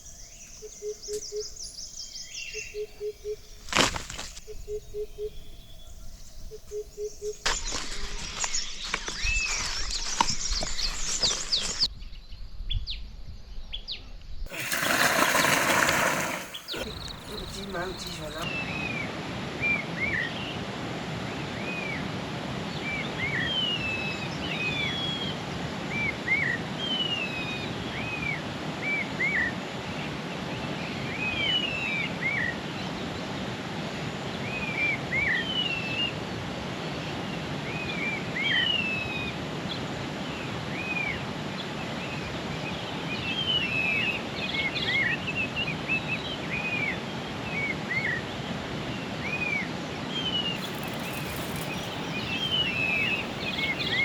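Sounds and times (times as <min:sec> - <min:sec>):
bird singing whistled notes: 0:00.0 - 0:03.6, 0:04.4 - 0:11.7, 0:16.5 - 0:18.5, 0:50.5 - 0:54.0
outdoor background hiss: 0:00.0 - 0:07.6, 0:50.4 - 0:54.0.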